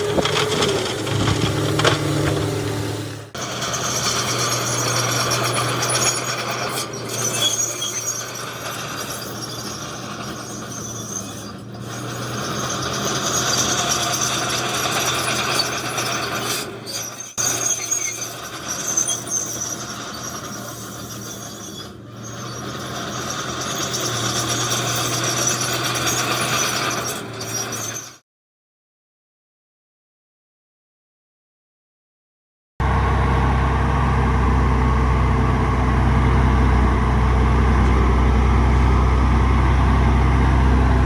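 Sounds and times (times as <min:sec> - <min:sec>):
diesel engine drone: 0:00.0 - 0:17.8, 0:32.8 - 0:41.0
metallic squealing and scraping: 0:00.0 - 0:28.2.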